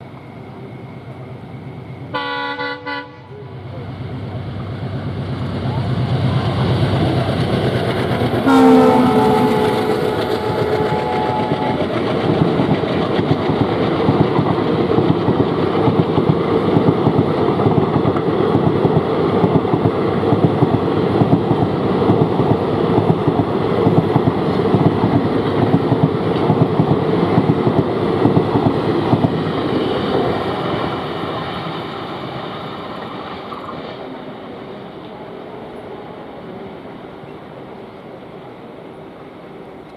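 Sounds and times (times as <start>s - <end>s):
diesel locomotives running: 0.0s - 39.9s
multi-tone train horn: 2.1s - 3.4s, 8.3s - 12.4s.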